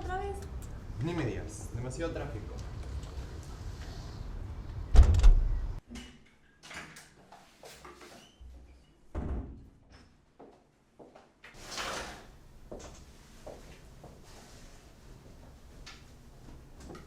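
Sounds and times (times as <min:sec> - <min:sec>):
door shutting with heavy thud: 0:04.9 - 0:05.7.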